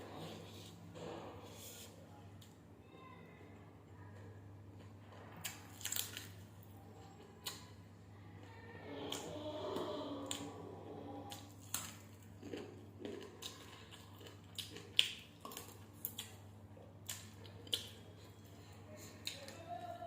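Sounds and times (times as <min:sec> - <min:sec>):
person chewing food: 0:04.1 - 0:07.8, 0:09.0 - 0:19.7
steady low hum: 0:06.2 - 0:20.0.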